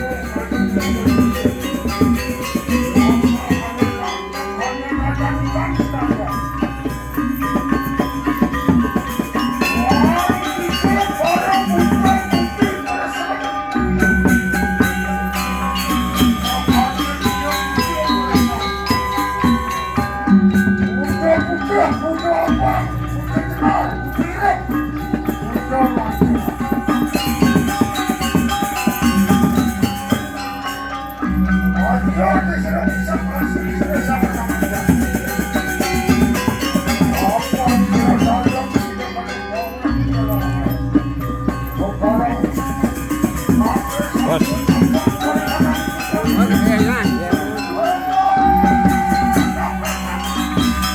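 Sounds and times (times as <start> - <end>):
gamelan ensemble playing: 0.0 - 50.9.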